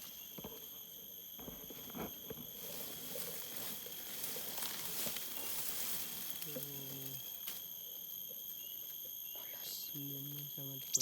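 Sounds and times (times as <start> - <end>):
high thin insect-like tone: 0.0 - 11.0.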